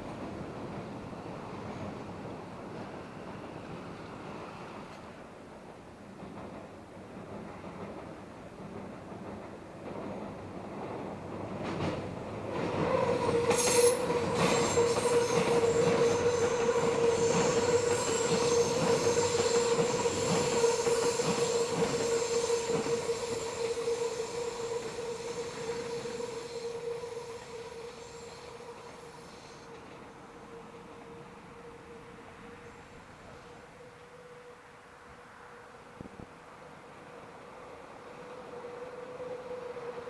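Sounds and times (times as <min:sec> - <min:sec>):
train wheels squealing: 0:11.7 - 0:35.6, 0:37.4 - 0:40.0.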